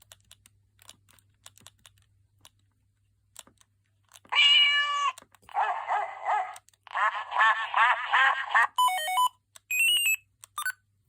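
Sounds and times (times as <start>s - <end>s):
electronic ringtone chirping: 8.8s - 10.8s.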